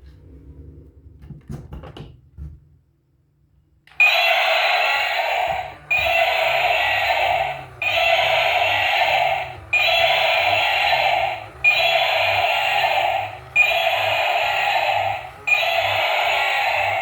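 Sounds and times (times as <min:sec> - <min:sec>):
toy electronic sound effect: 0:03.9 - 0:17.0.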